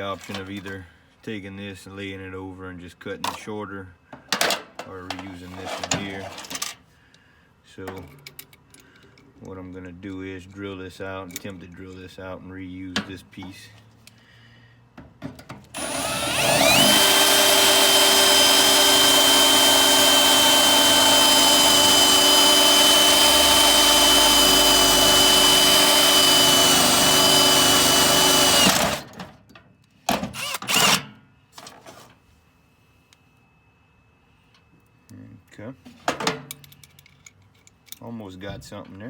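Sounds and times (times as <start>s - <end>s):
power drill drilling metal: 15.8s - 29.1s, 30.4s - 31.0s.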